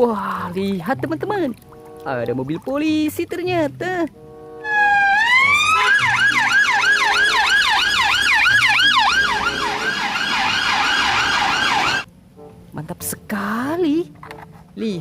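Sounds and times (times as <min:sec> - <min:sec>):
electronic police siren: 0:04.6 - 0:12.1.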